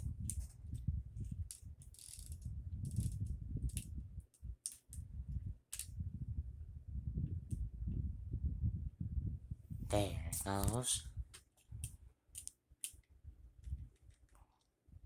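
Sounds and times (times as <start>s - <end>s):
plastic gears clicking: 1.5s - 3.9s, 4.6s - 5.0s, 5.7s - 5.9s, 11.8s - 13.1s.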